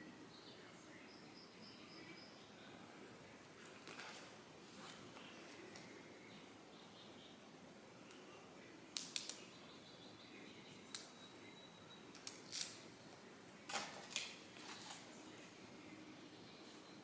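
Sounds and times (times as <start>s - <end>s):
book pages turning: 13.8s - 15.1s.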